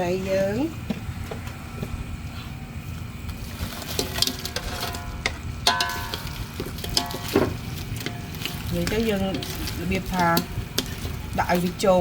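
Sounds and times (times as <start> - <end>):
food sizzling in a pan: 3.4 - 12.0
metal spatula scraping a pan: 3.4 - 12.0.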